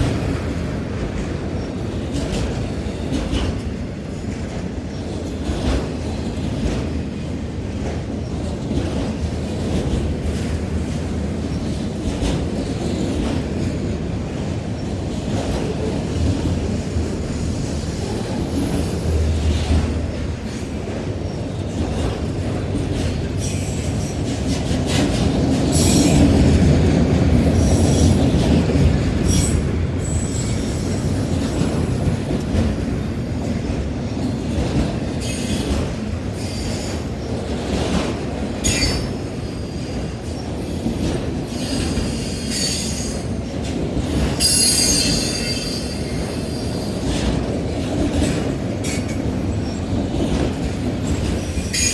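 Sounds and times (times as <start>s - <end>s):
freight train rumbling past: 0.0s - 51.9s
train wheels squealing: 17.6s - 19.8s, 23.4s - 26.4s, 29.3s - 33.5s, 35.2s - 37.3s, 38.6s - 43.4s, 44.1s - 47.1s, 48.3s - 51.9s.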